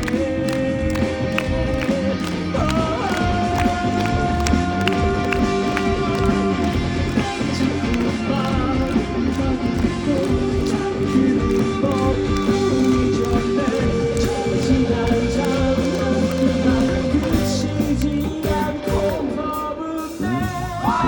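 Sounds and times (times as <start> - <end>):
electric guitars sustained notes: 0.0 - 21.0
rock band playing live: 0.0 - 21.0.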